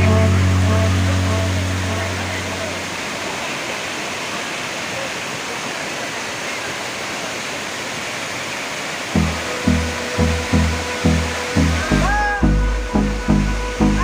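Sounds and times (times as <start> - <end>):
waterfall rushing: 0.0 - 14.0
music with pulsing bass beat: 9.2 - 14.0.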